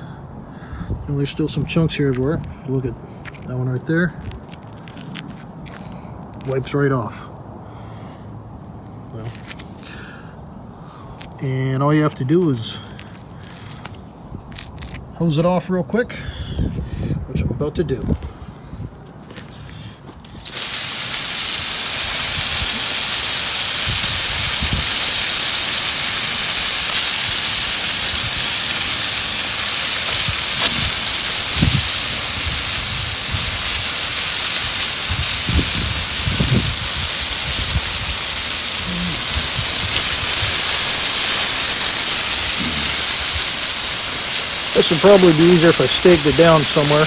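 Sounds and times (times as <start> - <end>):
garden hose spraying water: 20.5 - 47.0.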